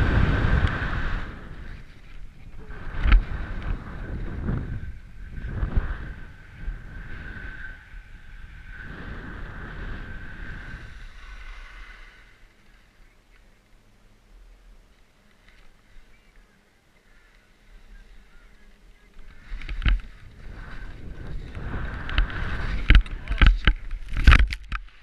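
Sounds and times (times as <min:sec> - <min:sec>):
wind buffeting microphone: 0:00.0 - 0:12.0, 0:17.7 - 0:24.9.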